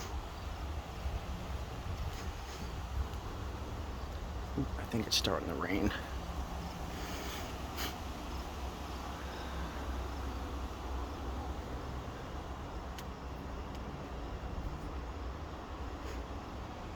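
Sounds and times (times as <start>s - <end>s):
wind buffeting the microphone: 0.0s - 15.2s
faint light ticks: 12.9s - 13.9s.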